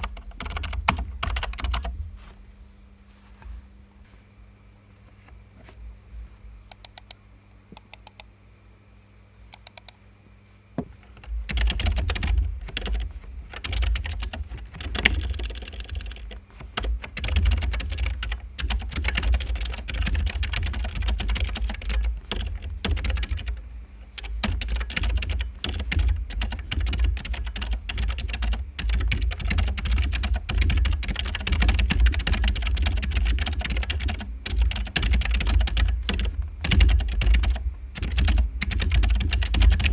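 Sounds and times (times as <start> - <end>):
clicky keyboard typing: 0.0 - 1.9, 6.7 - 7.2, 7.8 - 8.3, 9.6 - 10.0, 11.1 - 23.6, 24.2 - 39.9.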